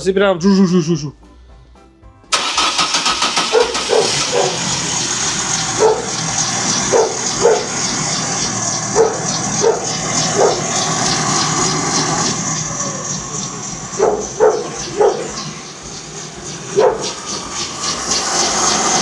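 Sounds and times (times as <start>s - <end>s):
car engine humming: 2.3s - 19.0s
wheel bearing drone: 2.3s - 19.0s
dog barking: 5.6s - 11.0s, 13.9s - 15.6s, 16.7s - 17.2s.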